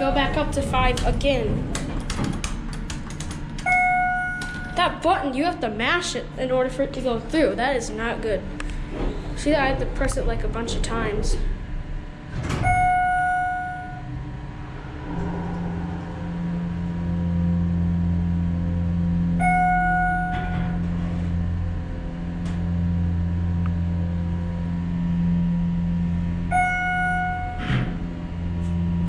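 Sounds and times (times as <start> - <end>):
elevator pump motor humming: 0.0 - 29.0
elevator floor chime: 3.6 - 4.8, 12.6 - 14.1, 19.4 - 20.8, 26.5 - 27.6.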